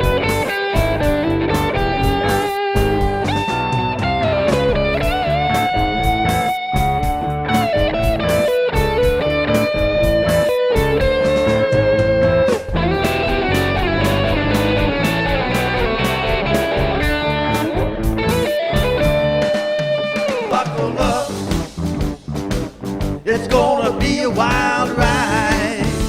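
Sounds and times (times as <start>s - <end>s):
bass: 0.0s - 19.6s, 20.4s - 26.0s
electric guitar lead: 11.9s - 19.6s
drum beat: 20.5s - 22.0s, 22.6s - 26.0s.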